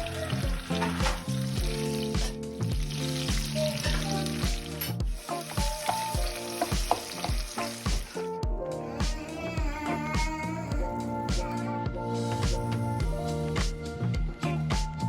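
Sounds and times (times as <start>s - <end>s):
food sizzling in a pan: 0.0s - 8.3s
music with a steady beat: 0.0s - 15.0s.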